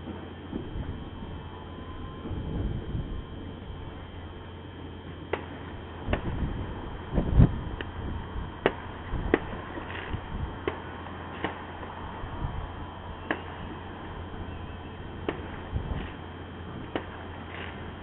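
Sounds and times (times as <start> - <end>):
distant fireworks bangs: 0.0 - 18.0
low hum and rumble: 0.0 - 18.0.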